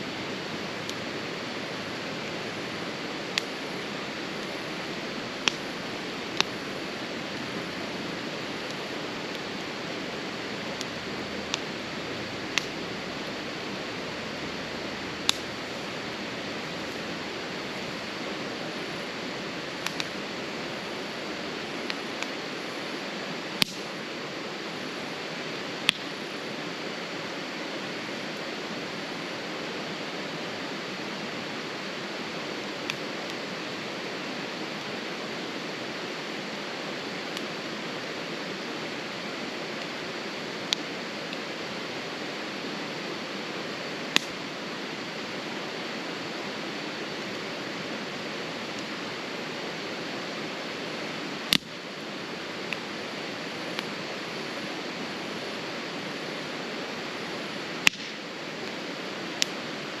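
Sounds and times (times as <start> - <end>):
steady hiss: 0.0 - 60.0
wood fire crackling: 0.0 - 60.0
sharp pops of fire: 5.3 - 6.6, 10.5 - 13.4, 14.9 - 15.8, 19.8 - 20.2, 23.6 - 24.0, 25.8 - 26.1, 44.1 - 44.4, 51.4 - 51.8, 57.8 - 59.6.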